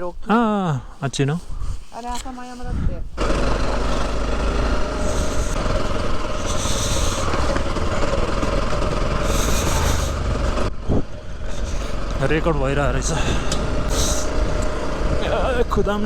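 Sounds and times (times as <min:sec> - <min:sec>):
wind rushing on microphone: 0:01.4 - 0:12.6
motorcycle engine running: 0:03.2 - 0:16.0
brief hissing surges: 0:03.5 - 0:07.6, 0:09.2 - 0:10.3, 0:13.3 - 0:14.4.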